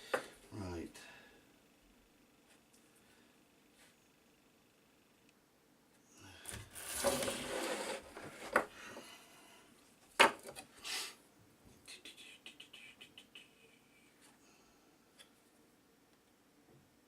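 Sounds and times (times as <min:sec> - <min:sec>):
wood scraping against wood: 0:06.5 - 0:08.7.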